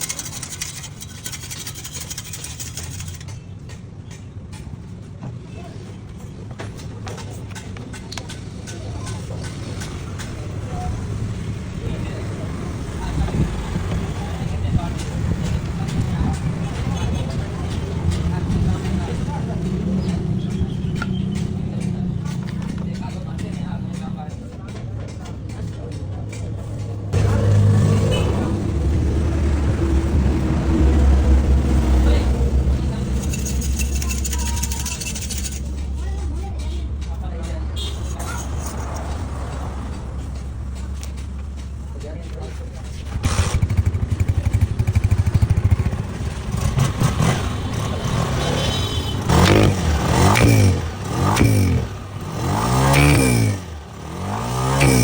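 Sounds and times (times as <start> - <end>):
vehicle engine rumbling: 0.0 - 55.0
engine running and revving: 27.1 - 35.7, 43.0 - 55.0.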